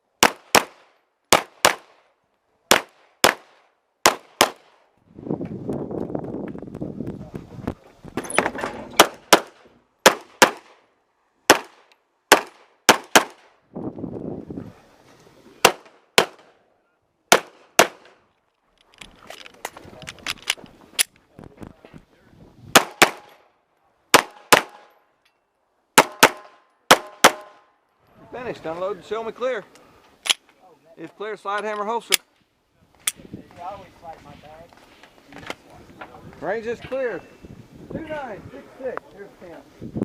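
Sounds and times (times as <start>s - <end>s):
pistol shots: 0.2s - 2.0s, 2.7s - 4.8s, 9.0s - 10.8s, 11.5s - 13.5s, 17.3s - 18.2s, 22.7s - 23.3s, 24.1s - 24.9s, 26.0s - 27.6s.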